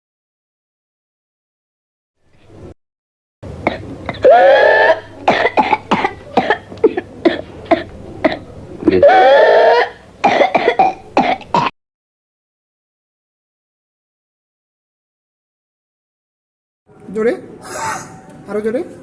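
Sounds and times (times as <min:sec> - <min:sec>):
person coughing in fits: 0:03.7 - 0:11.7.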